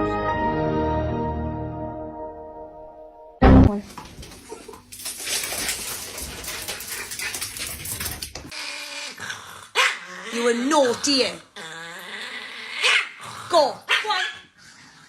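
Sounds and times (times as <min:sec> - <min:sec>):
crackling rustling background: 0:03.8 - 0:08.5
dog whimpering: 0:10.3 - 0:12.0.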